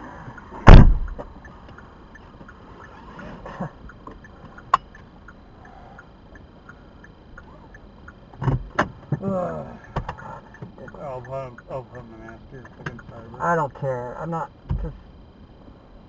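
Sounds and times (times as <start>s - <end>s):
faint light ticking: 0.0s - 8.4s, 9.8s - 13.2s
loud knocks: 0.6s - 1.3s
sharp click: 0.7s - 1.8s.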